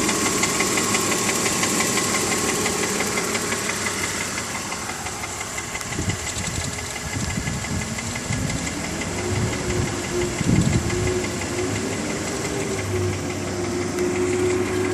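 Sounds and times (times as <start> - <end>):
car engine idling: 0.0 - 14.9
fast light engine ticking: 0.0 - 14.9
low rumbling thumps: 3.2 - 14.9.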